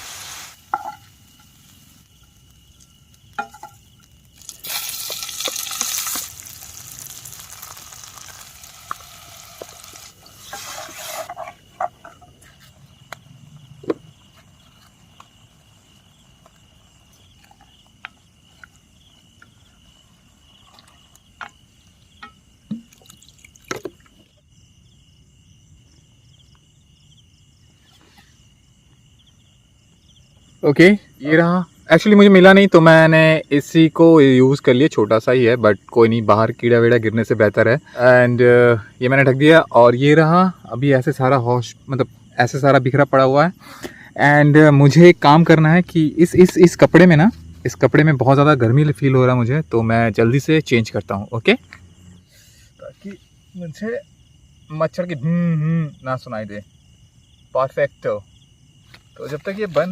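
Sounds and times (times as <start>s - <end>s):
prawns sizzling in a hot pan: 0.0s - 11.3s
high insect chirr: 0.0s - 59.9s.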